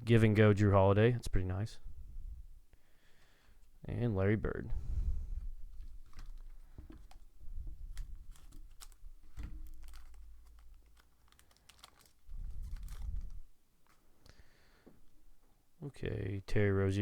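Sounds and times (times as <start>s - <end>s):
card pack wrapper crinkling: 5.7s - 14.1s.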